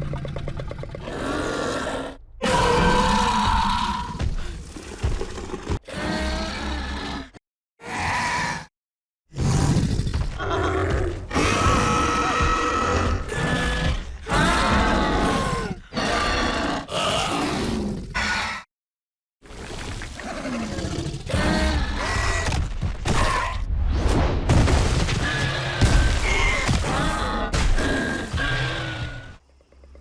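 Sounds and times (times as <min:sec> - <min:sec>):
creature grunts squeals and roars: 0:01.0 - 0:08.7, 0:09.4 - 0:18.7, 0:20.6 - 0:23.7, 0:25.1 - 0:29.4.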